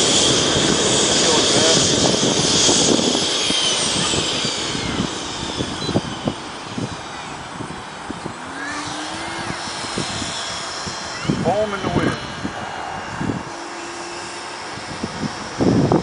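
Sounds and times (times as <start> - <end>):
model airplane motor whine: 0.0 - 16.0
wind buffeting microphone: 0.0 - 16.0.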